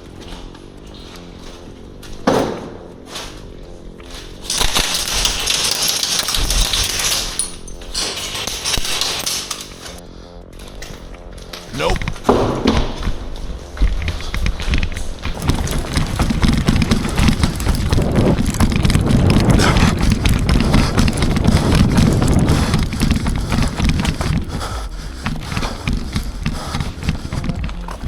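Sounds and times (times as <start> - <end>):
low wind buffeting: 11.7 - 28.0
rustling and knocking on microphone: 11.8 - 28.0.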